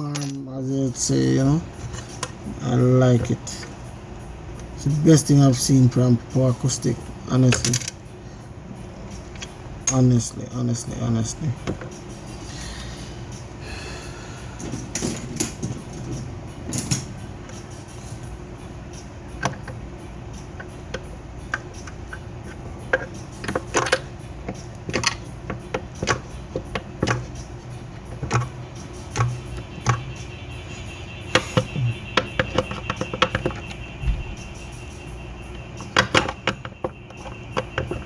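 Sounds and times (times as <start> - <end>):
steady low hum: 0.0 - 38.0
small parts and tools clicking: 7.5 - 8.0, 20.6 - 27.4, 28.0 - 30.2, 31.3 - 33.8, 35.8 - 38.0.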